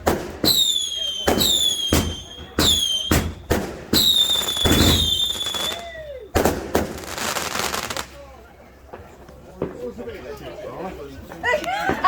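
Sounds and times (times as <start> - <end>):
fireworks bangs: 0.0 - 8.2
firework crackling: 0.0 - 8.4
firework whistle: 0.4 - 6.5.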